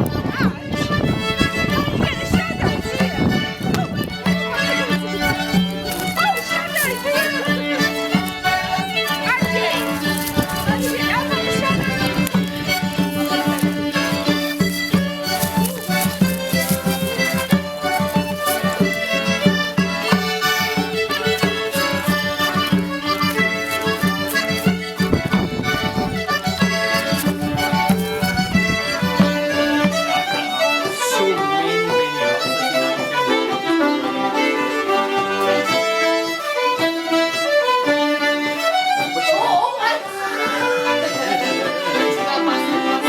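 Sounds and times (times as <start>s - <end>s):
accordion and fiddle folk tune: 0.0s - 43.0s.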